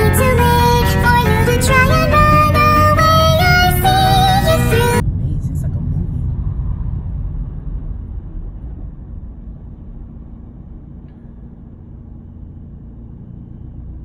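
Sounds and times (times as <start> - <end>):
low rumbling noise: 0.0 - 14.0.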